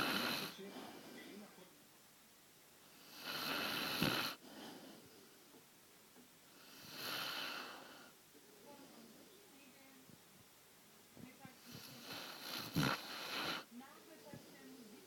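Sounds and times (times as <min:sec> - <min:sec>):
dog snoring: 0:00.0 - 0:01.1, 0:02.9 - 0:05.0, 0:06.5 - 0:08.1, 0:11.6 - 0:13.7.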